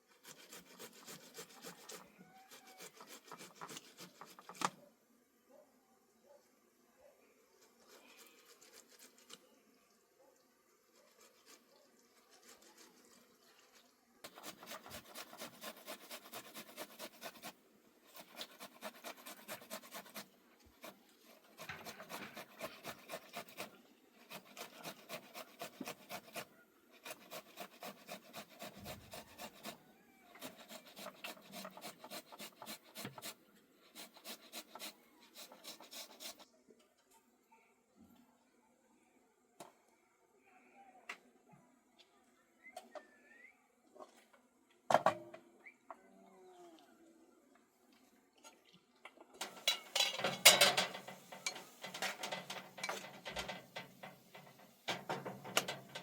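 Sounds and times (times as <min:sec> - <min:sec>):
rapid rasping strokes: 0:00.1 - 0:04.7, 0:07.8 - 0:09.4, 0:14.2 - 0:29.8, 0:30.4 - 0:36.4, 0:49.6 - 0:56.0
faint rubbing: 0:11.0 - 0:29.8, 0:30.4 - 0:36.4, 0:49.5 - 0:56.0.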